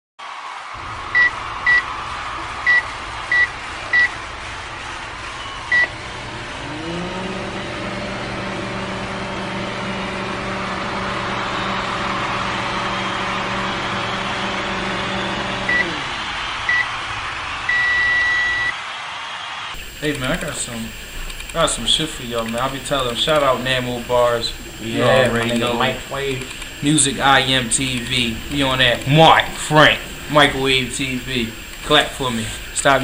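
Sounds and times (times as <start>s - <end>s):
microwave oven humming: 0.8s - 18.7s, 19.8s - 33.0s
long beep: 15.7s - 15.9s, 17.7s - 18.7s.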